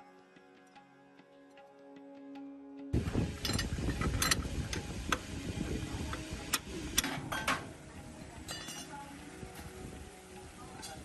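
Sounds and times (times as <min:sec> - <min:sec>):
instrumental music: 0:00.0 - 0:11.0
metal tools clinking: 0:03.4 - 0:04.4, 0:08.5 - 0:08.9.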